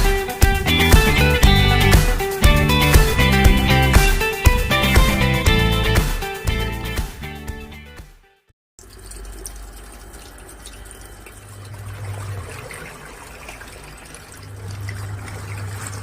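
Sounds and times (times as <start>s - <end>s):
washing machine water churning: 0.0s - 5.2s, 8.8s - 16.0s.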